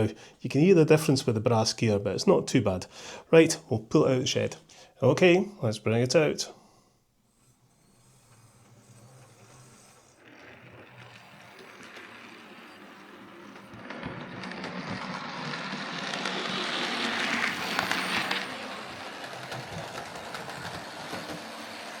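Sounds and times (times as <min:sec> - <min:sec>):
model train motor whirring: 0:07.2 - 0:22.0.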